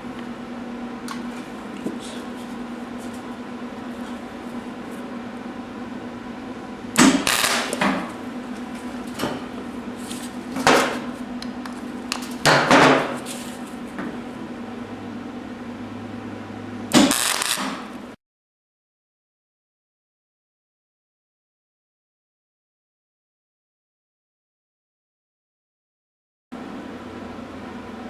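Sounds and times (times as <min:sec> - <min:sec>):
welder hum: 0:00.0 - 0:18.2
welding arc crackle: 0:07.0 - 0:14.0, 0:16.9 - 0:18.0.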